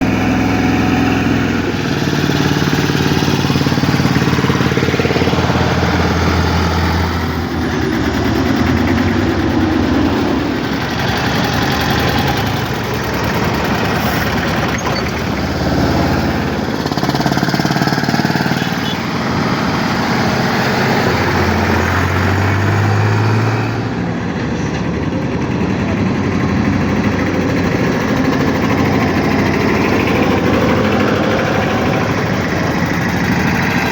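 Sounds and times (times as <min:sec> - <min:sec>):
farm vehicle engine running: 0:00.0 - 0:33.9.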